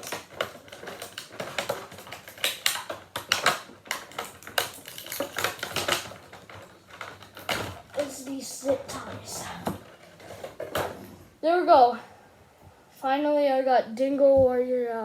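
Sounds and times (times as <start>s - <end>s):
plastic packaging clicking and crackling: 0.0s - 11.0s.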